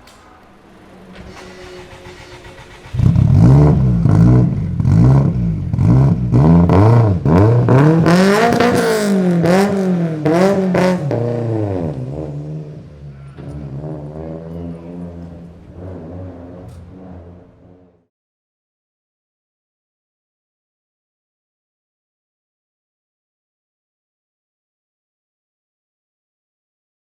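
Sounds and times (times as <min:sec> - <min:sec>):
car engine revving: 0:00.0 - 0:18.1.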